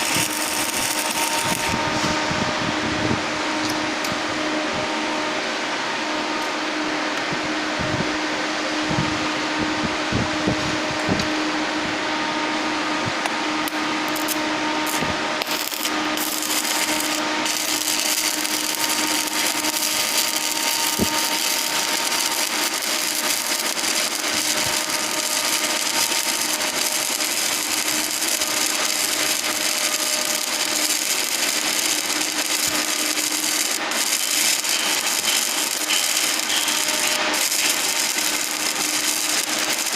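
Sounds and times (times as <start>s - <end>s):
arc welding crackle and sizzle: 0.0s - 4.3s, 13.1s - 39.9s
steady hum: 0.0s - 39.9s.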